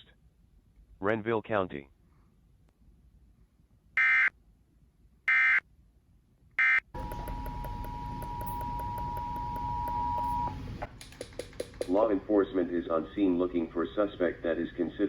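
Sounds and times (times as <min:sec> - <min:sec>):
two-tone attention signal: 0:07.0 - 0:10.6
hissy humming background: 0:07.0 - 0:15.0.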